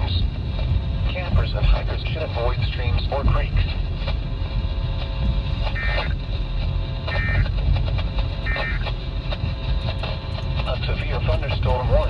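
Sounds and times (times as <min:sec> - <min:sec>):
low rumble: 0:00.0 - 0:12.0
radio hiss: 0:01.1 - 0:04.2, 0:10.6 - 0:12.0.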